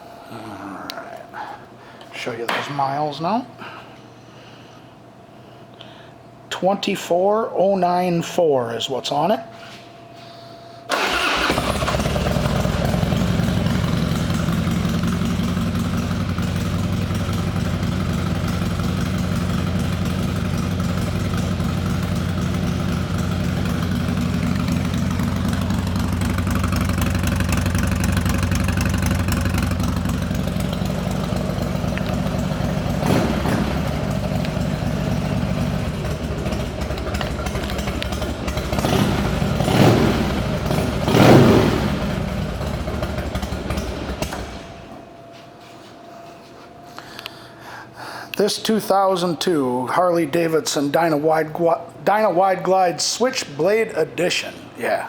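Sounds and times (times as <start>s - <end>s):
motorcycle engine idling: 11.0s - 44.9s.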